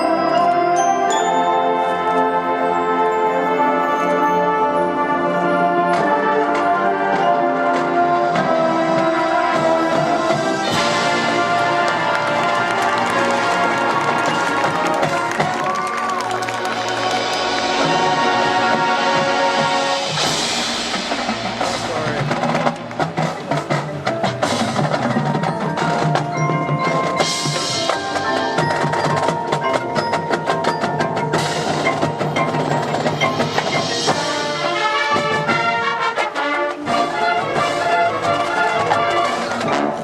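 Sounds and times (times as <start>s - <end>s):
mallet keyboards playing: 0.0s - 40.0s
drums playing: 8.4s - 40.0s.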